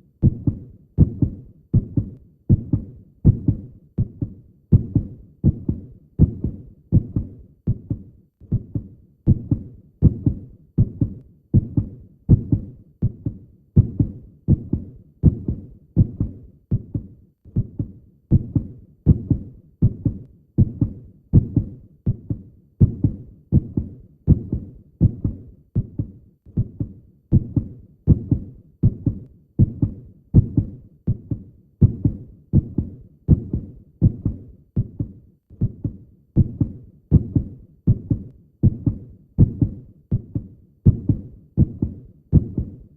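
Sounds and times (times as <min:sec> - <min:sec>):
heartbeat thumps: 0:00.2 - 0:42.9.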